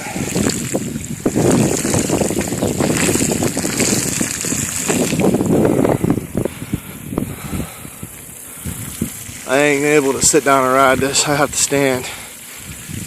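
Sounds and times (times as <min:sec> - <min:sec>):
bike tyres splashing through water: 0:00.0 - 0:13.0
wind buffeting microphone: 0:00.0 - 0:13.0.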